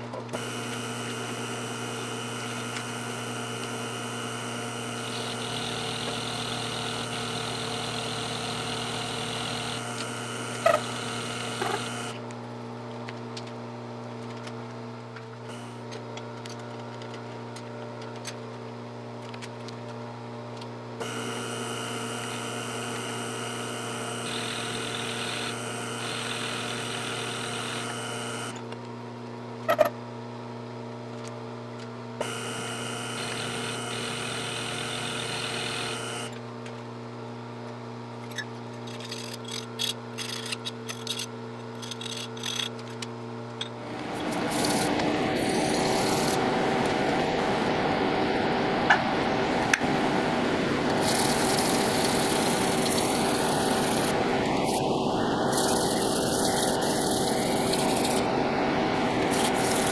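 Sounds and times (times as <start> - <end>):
high-pitched machine whine: 0.3 - 12.2, 21.0 - 28.6, 32.2 - 36.4, 43.8 - 59.9
milling machine motor hum: 0.3 - 12.3, 15.5 - 16.1, 21.0 - 28.6, 32.2 - 36.4, 43.7 - 59.9.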